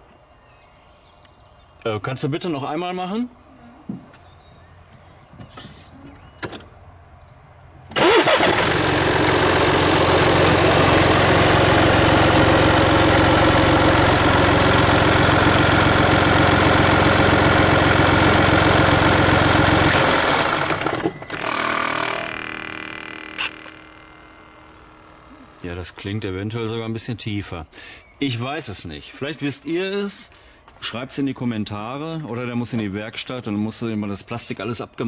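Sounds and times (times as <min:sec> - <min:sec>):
diesel engine running: 0:07.9 - 0:26.2.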